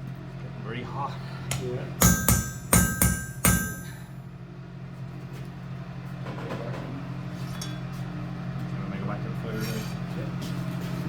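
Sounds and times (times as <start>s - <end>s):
steady low hum: 0.0s - 6.2s
hammer striking steel on anvil: 1.5s - 4.1s.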